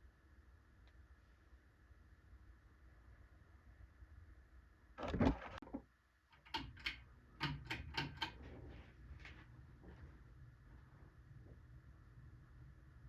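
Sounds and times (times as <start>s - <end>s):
sharp clicks and knocks: 5.0s - 8.4s
ceiling fan motor hum: 6.0s - 13.0s.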